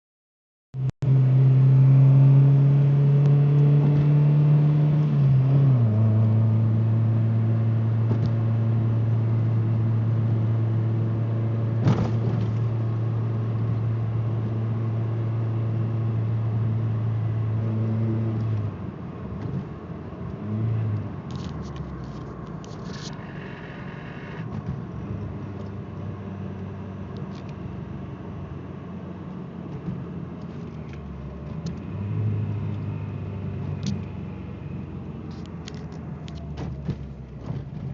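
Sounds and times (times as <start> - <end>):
car engine running: 21.0 - 26.1.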